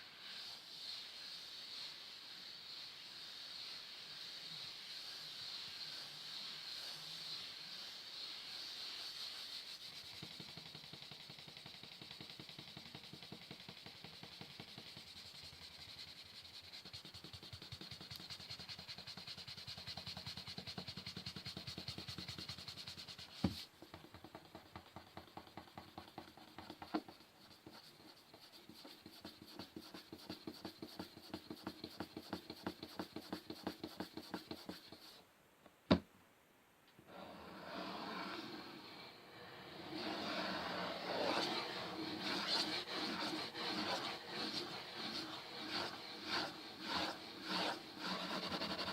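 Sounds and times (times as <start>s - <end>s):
fingers scratching on wood: 9.8s - 35.2s, 39.8s - 48.9s.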